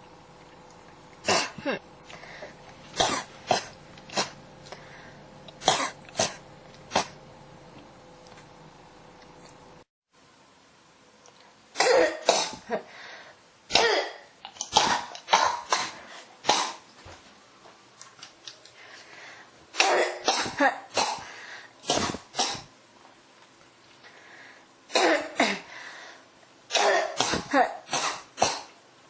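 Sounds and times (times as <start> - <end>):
person coughing: 1.2 - 2.4, 3.0 - 4.4, 5.6 - 7.2, 11.8 - 12.9, 13.7 - 16.8, 19.8 - 22.7, 24.9 - 25.7, 26.7 - 28.8.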